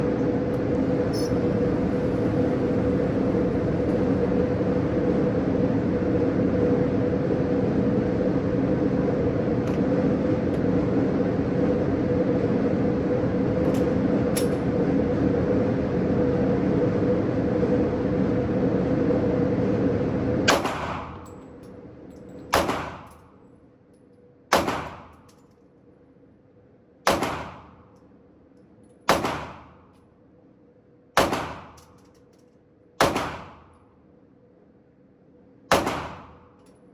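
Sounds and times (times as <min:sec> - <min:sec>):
steady noise with hum: 0:00.0 - 0:36.9
pistol shots: 0:20.5 - 0:21.2, 0:22.5 - 0:23.1, 0:24.5 - 0:25.2, 0:27.1 - 0:27.8, 0:29.1 - 0:29.8, 0:31.2 - 0:31.8, 0:33.0 - 0:33.7, 0:35.7 - 0:36.5.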